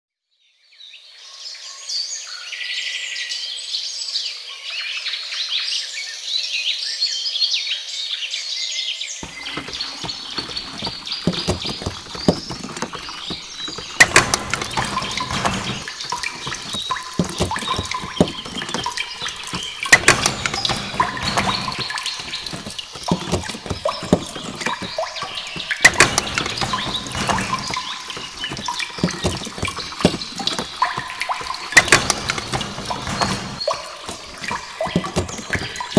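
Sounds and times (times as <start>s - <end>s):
birds chirping: 9.2s - 35.9s
hand pump clanking: 9.2s - 35.9s
water gushing and splashing: 9.2s - 35.9s.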